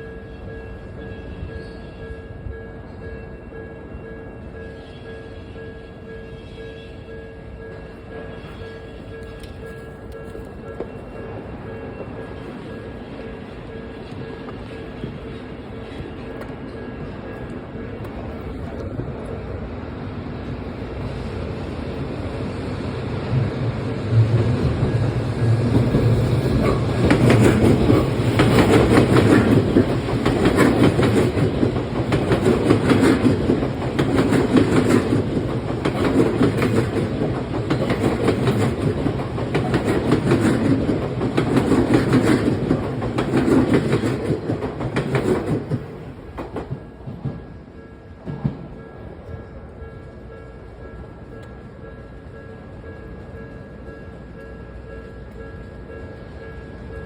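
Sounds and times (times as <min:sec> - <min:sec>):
train wheels clacking on rails: 0:23.0 - 0:57.0.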